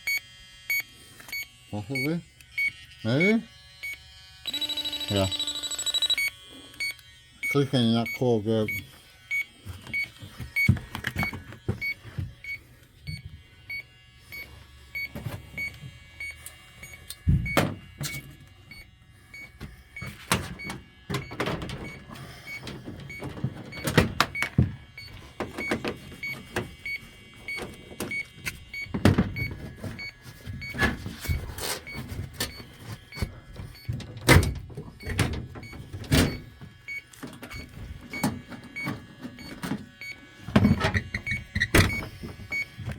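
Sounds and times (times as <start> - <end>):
leak detector beeping: 0.0 - 42.9
metal panels and tools clattering: 20.3 - 21.9.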